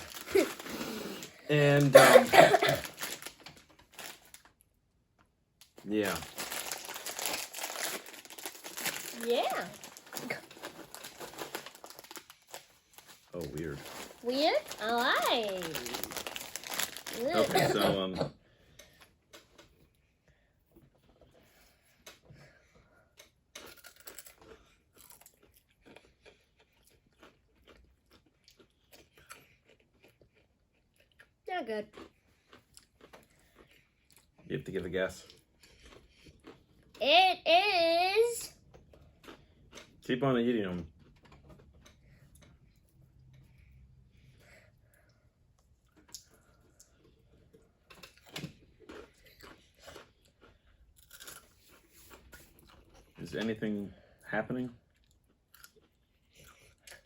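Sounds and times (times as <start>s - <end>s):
person chewing crunchy snack: 0.0s - 1.9s, 6.1s - 17.8s, 23.1s - 34.4s, 35.2s - 37.0s, 38.8s - 40.0s, 45.8s - 53.1s, 54.8s - 57.0s.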